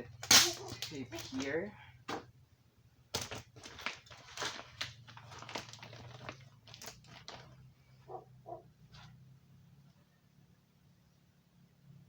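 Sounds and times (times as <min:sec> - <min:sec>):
tape and plastic crinkling: 0:00.1 - 0:02.2, 0:03.1 - 0:07.7.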